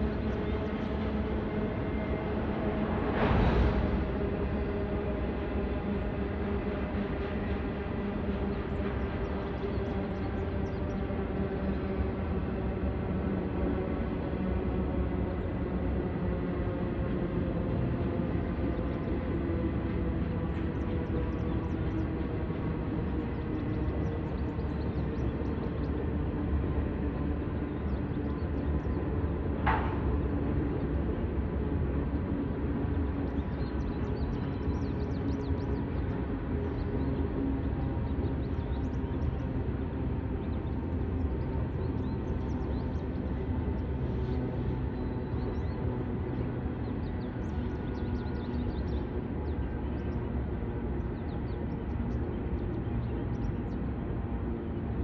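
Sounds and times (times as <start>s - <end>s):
train wheels rumbling on rails: 0.0s - 24.4s.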